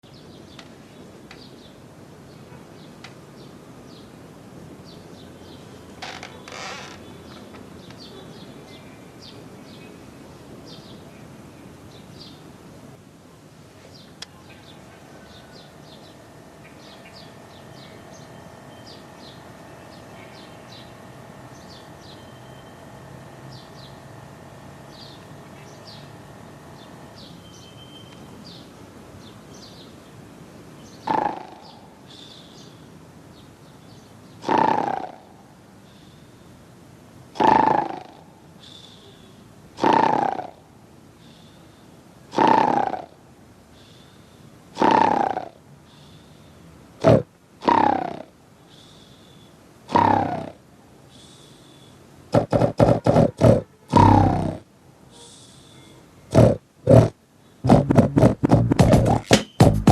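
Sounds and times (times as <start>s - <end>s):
background hiss: 0.0s - 59.9s
faint steady hum: 0.0s - 59.9s
short high chirps: 57.7s - 59.9s.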